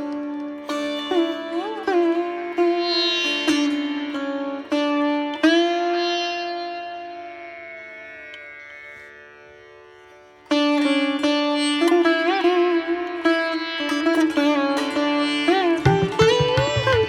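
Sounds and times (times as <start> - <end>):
plucked string notes: 15.6 - 17.0.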